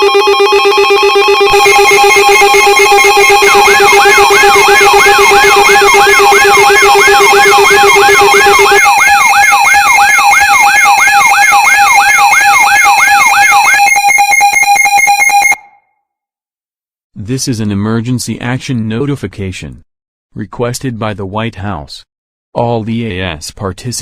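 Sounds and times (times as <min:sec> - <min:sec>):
rapid buzzy pulsing: 0:00.0 - 0:14.0
siren-like sweep: 0:00.0 - 0:15.8
steady alert tones: 0:00.0 - 0:15.8.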